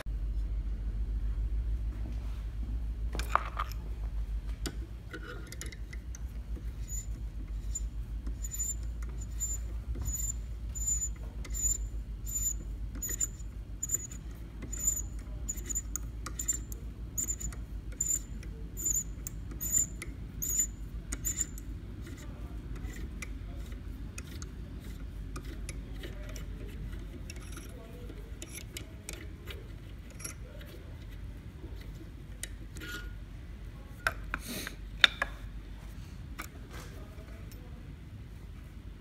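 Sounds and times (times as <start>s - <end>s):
small machine humming: 5.0s - 33.2s.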